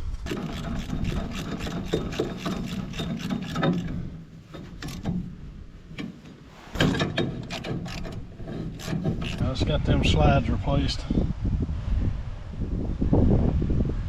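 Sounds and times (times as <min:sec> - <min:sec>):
ratchet wrench clicking: 0:00.0 - 0:05.3, 0:06.0 - 0:09.4.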